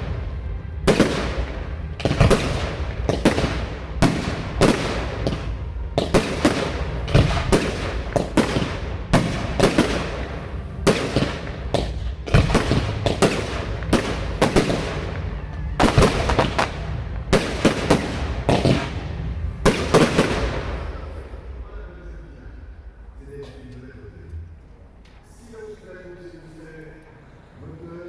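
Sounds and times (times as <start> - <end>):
fireworks exploding with echoing bangs: 0.0 - 21.8.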